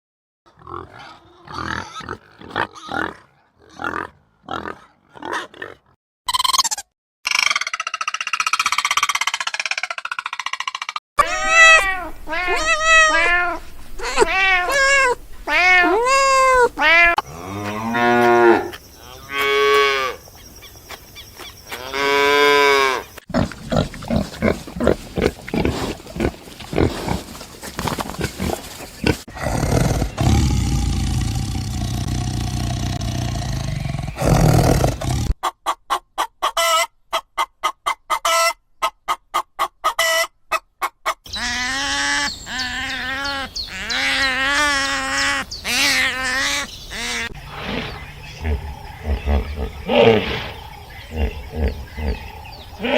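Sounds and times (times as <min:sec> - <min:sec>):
cat-like meowing cries: 0:11.2 - 0:17.2.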